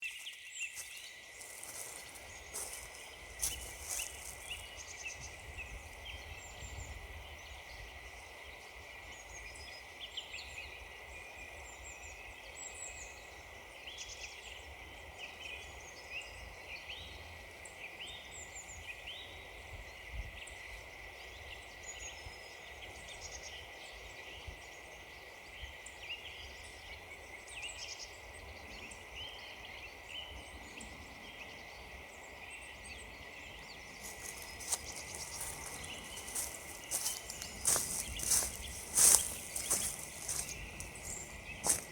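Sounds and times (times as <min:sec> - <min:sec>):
birds chirping and trilling: 0:00.0 - 0:08.4, 0:26.2 - 0:41.9.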